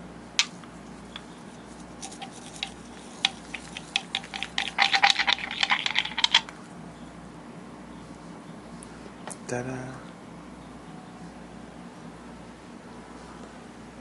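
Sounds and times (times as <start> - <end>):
herb grinder clicking: 2.0 - 6.5.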